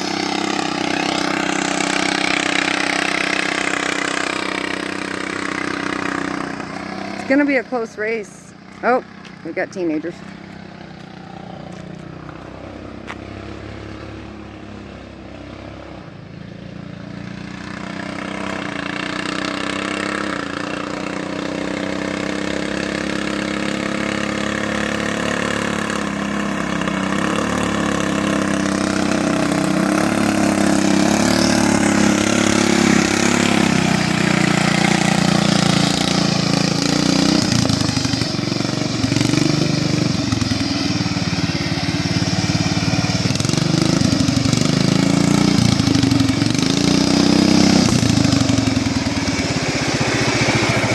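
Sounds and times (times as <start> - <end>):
lawnmower engines droning: 0.0 - 50.9.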